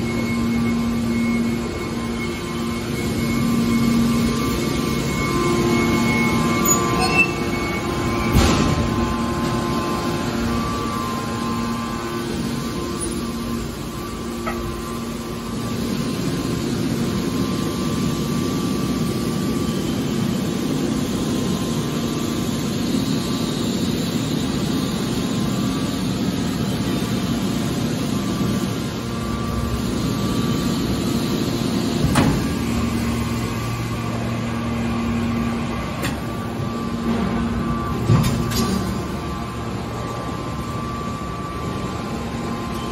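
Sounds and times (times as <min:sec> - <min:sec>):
hydraulic machinery humming: 0:00.0 - 0:42.9.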